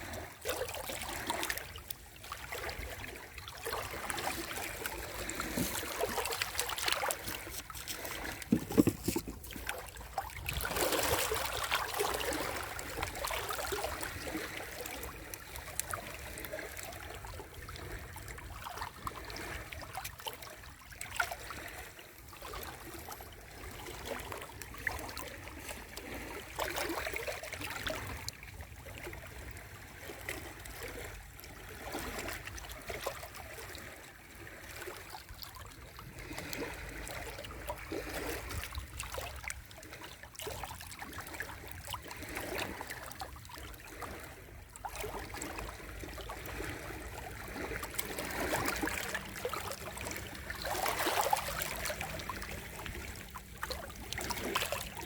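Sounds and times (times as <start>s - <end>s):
small waves splashing on shore: 0.0s - 55.0s.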